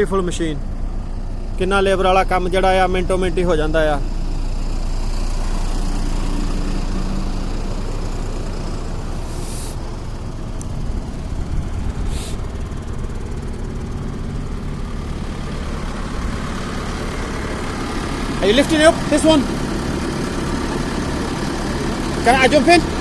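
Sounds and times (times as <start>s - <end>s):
turf harvester running: 0.0s - 23.0s
short hisses: 9.2s - 9.9s, 12.0s - 12.5s.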